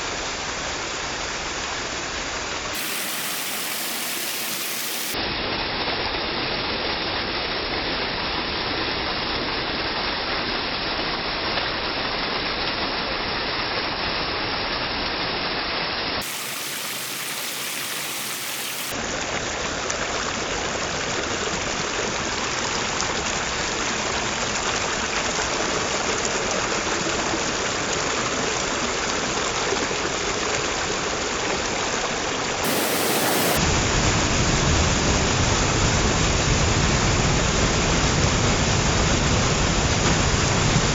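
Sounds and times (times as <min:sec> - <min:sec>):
waterfall rushing and splashing: 0:02.8 - 0:05.2, 0:16.2 - 0:19.0, 0:32.6 - 0:34.4.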